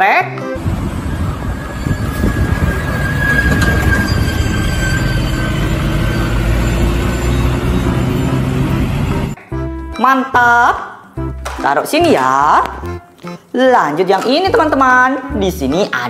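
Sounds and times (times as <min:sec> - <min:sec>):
faint high whine: 0:00.6 - 0:08.7.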